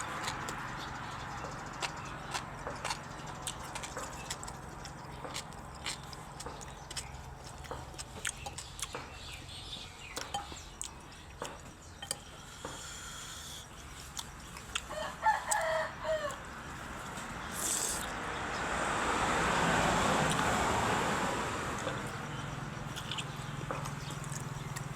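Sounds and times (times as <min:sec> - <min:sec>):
rooster crowing: 0:14.8 - 0:16.6.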